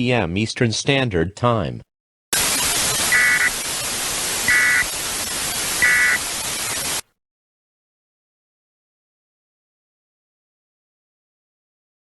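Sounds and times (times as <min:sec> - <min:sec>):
high electronic data bursts: 0:02.4 - 0:07.0
tv static hiss: 0:02.4 - 0:07.1.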